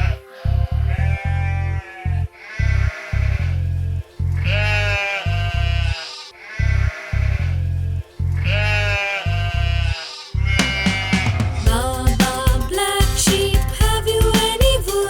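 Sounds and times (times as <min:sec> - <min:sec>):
sheep bleating: 0:04.4 - 0:07.4, 0:08.4 - 0:11.4
children's music with heavy bass beat: 0:10.5 - 0:15.0.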